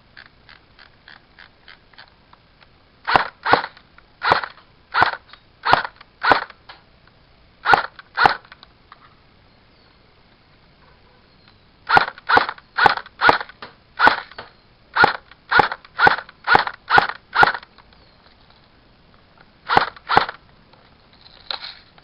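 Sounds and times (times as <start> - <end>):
airsoft rifle shots: 3.0 - 6.6, 7.6 - 8.6, 11.9 - 17.7, 19.7 - 20.4.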